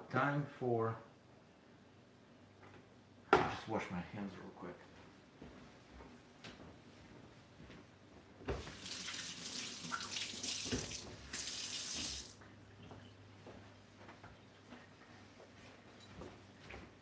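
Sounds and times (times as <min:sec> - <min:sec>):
tap water running into sink: 0:08.5 - 0:12.4.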